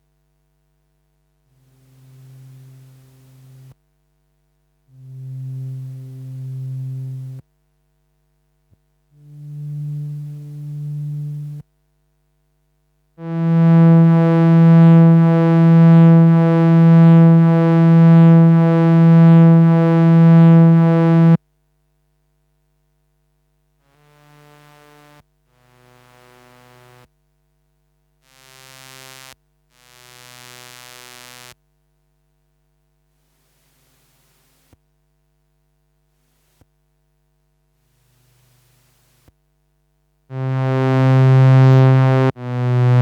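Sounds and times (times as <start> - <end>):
analog synthesizer low held notes: 5.0 - 7.4, 9.2 - 11.6, 13.2 - 21.4, 40.3 - 43.0.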